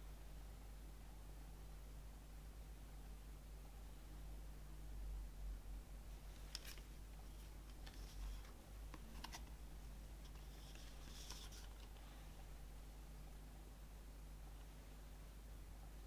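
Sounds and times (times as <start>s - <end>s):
packaging rustle: 10.2s - 12.1s.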